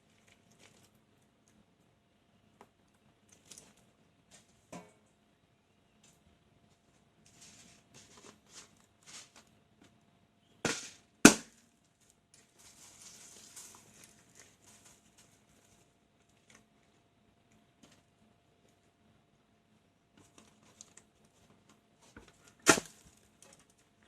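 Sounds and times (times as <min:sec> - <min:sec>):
handling rustles and clicks: 0:11.9 - 0:18.9, 0:20.2 - 0:24.0.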